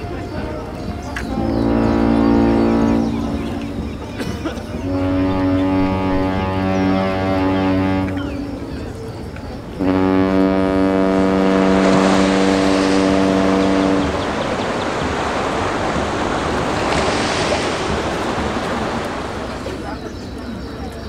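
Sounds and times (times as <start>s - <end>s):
ship's horn blast: 0.0s - 9.1s, 9.7s - 19.8s
steady rushing noise: 11.6s - 20.2s.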